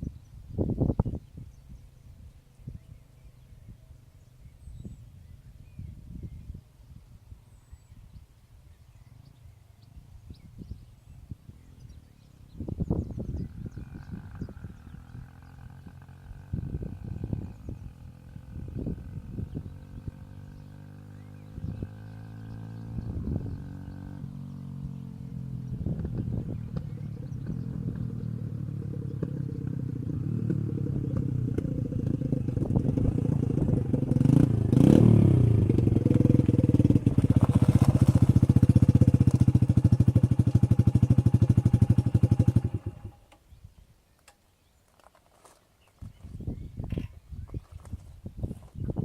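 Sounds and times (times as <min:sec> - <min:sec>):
motorcycle engine throbbing: 0:12.5 - 0:43.4.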